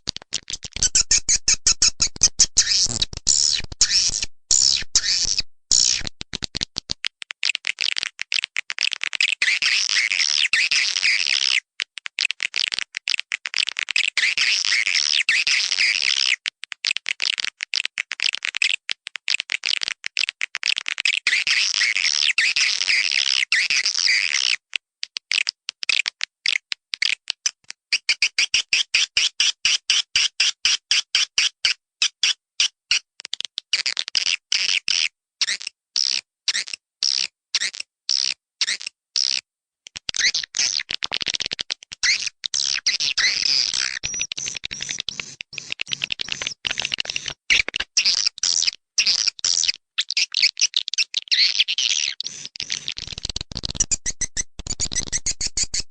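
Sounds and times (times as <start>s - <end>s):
fast bird clicks: 6.0s - 9.4s, 39.9s - 47.8s, 52.6s - 55.9s.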